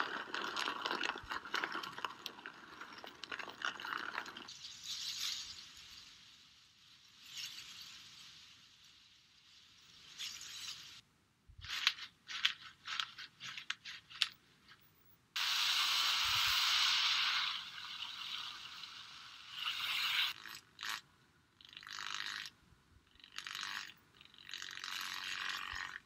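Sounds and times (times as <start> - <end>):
hiss-like rush: 15.4 - 20.3.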